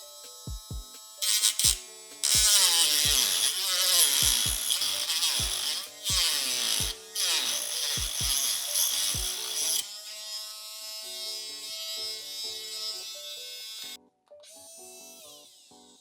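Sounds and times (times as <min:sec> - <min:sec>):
background music with kick drum: 0:00.0 - 0:09.9
rotary tool cutting plastic: 0:00.0 - 0:16.0.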